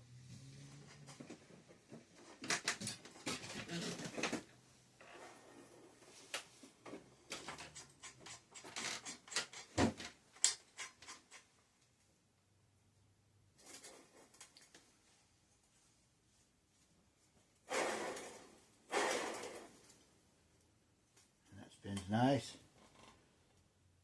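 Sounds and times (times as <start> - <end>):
bicycle parts clicking and knocking: 7.3 - 11.6.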